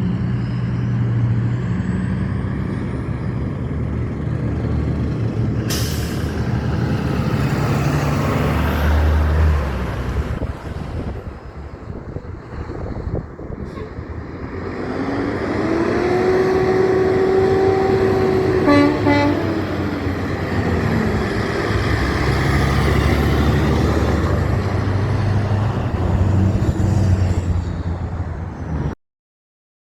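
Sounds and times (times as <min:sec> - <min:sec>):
truck engine rumble passing: 0:00.0 - 0:29.0
truck horn blast: 0:16.0 - 0:20.0.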